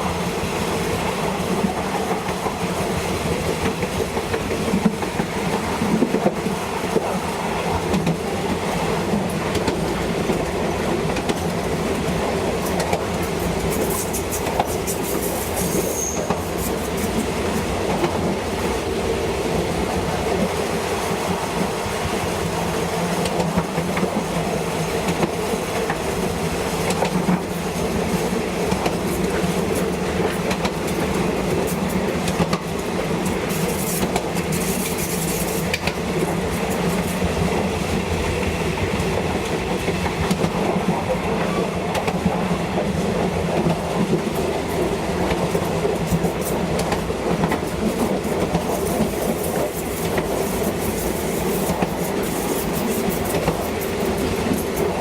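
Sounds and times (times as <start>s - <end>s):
train running on track: 0.0s - 55.0s.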